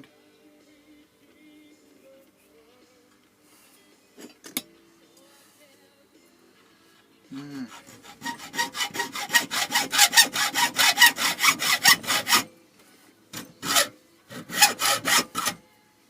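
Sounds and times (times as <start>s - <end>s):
rapid rubbing strokes: 7.7s - 12.5s, 13.6s - 15.6s.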